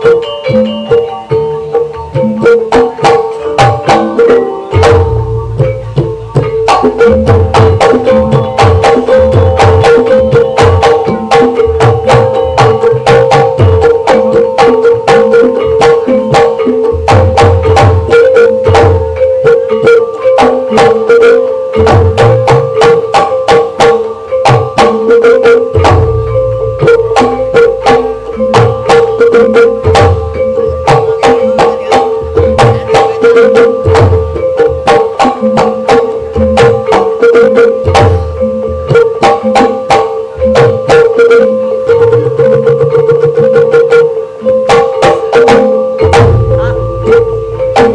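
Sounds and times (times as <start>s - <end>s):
gamelan ensemble with drums: 0.0s - 47.9s
steady held note: 40.2s - 47.9s.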